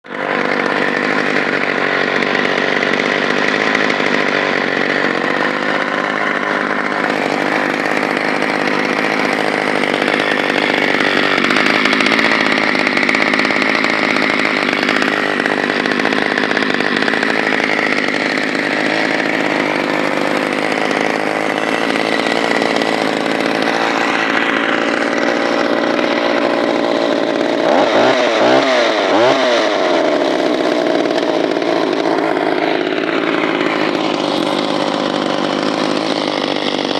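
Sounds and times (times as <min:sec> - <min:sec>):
chainsaw running and revving: 0:00.0 - 0:36.9.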